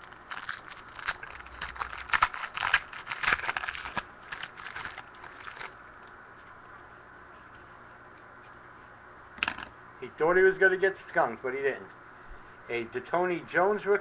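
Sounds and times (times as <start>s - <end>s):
plastic wrapper tearing and crinkling: 0.0s - 5.8s.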